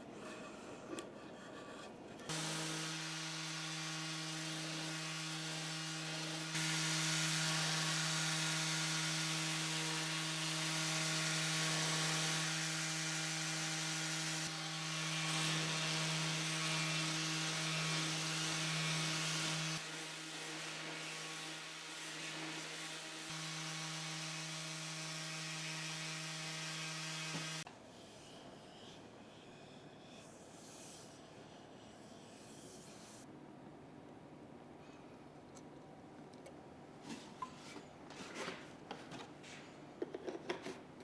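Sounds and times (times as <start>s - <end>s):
electric sander on wood: 2.3s - 27.6s.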